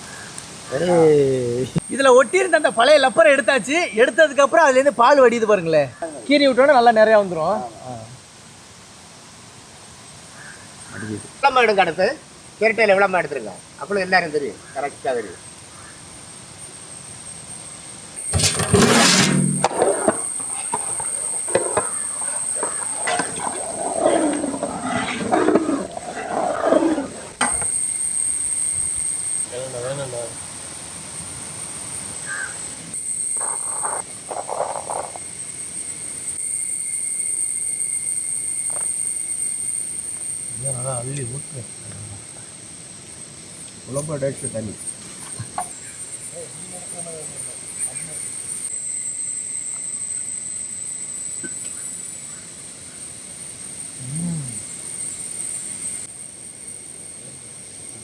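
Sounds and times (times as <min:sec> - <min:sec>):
insect chorus droning: 0:00.0 - 0:58.0
harsh bird calls: 0:10.3 - 0:11.4, 0:20.4 - 0:27.4, 0:32.2 - 0:32.7.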